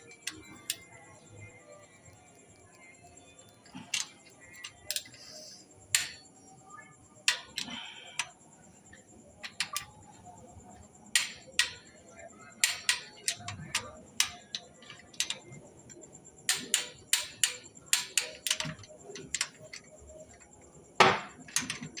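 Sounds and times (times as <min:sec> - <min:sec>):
hand tools clicking on metal: 0:00.0 - 0:01.0, 0:02.0 - 0:06.2, 0:07.2 - 0:08.4, 0:09.4 - 0:10.0, 0:11.1 - 0:11.9, 0:12.5 - 0:20.6, 0:21.3 - 0:22.0.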